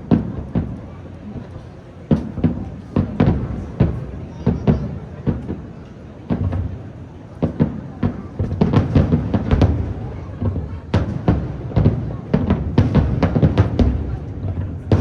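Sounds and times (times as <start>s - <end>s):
firework shells booming: 2.1s - 15.0s.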